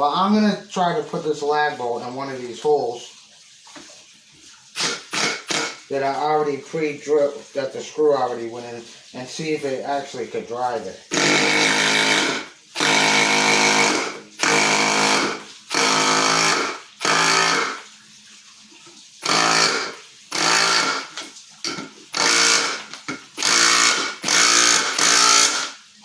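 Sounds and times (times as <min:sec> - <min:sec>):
impact driver bursts: 0:04.8 - 0:05.8, 0:11.1 - 0:17.8, 0:19.2 - 0:21.2, 0:22.2 - 0:25.8.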